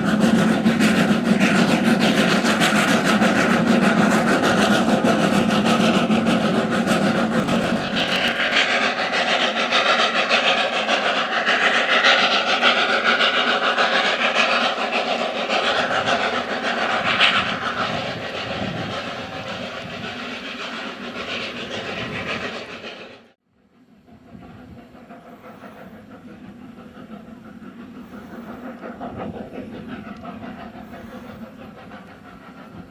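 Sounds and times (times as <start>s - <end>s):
rack train running past: 0.0s - 32.9s.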